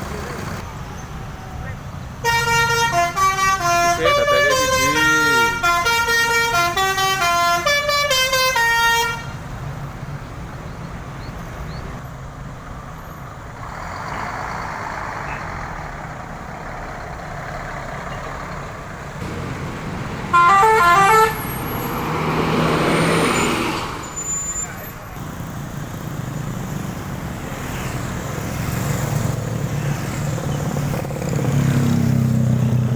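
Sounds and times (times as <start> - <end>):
traffic and engine noise: 0.0 - 32.9
bus musical horn tune: 2.2 - 9.4, 20.2 - 21.9
vehicle passing close: 13.6 - 32.9.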